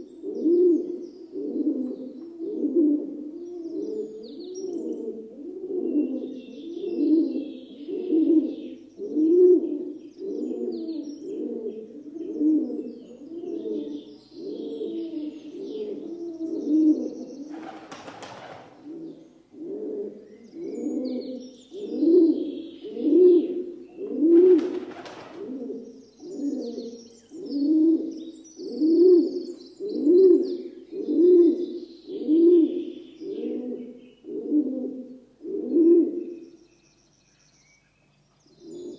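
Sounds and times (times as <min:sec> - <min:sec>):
dove cooing: 0:00.0 - 0:36.4, 0:38.6 - 0:38.9
small birds chirping: 0:06.0 - 0:19.5.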